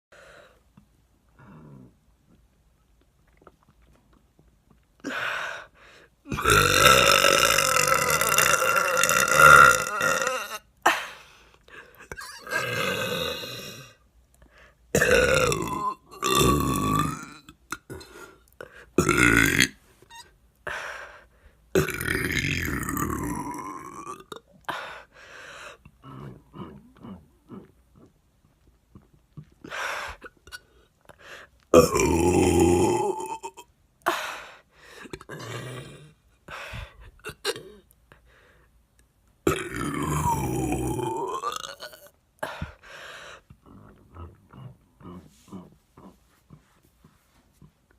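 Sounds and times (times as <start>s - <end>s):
woman burping: 6.3s - 11.1s, 12.0s - 13.9s, 15.0s - 18.1s, 19.0s - 19.8s, 31.7s - 33.7s, 39.5s - 42.6s.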